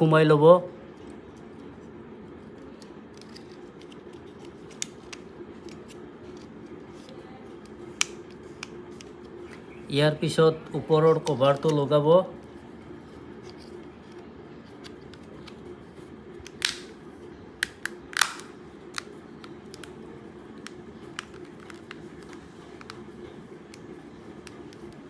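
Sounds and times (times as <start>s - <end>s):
plastic clicks and snaps: 7.6s - 9.6s, 16.4s - 17.0s, 17.6s - 20.0s, 20.6s - 23.0s.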